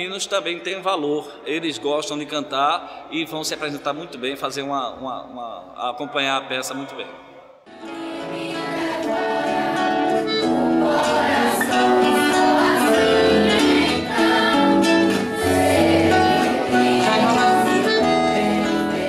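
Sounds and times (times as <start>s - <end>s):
choir singing held notes: 7.7s - 19.0s
instrumental accompaniment: 7.7s - 19.0s.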